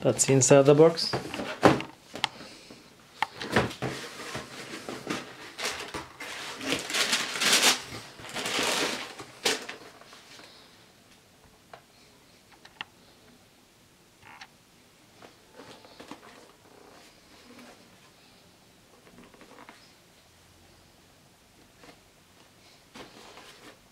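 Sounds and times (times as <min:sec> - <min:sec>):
shoebox contents rustling: 0:03.3 - 0:10.6.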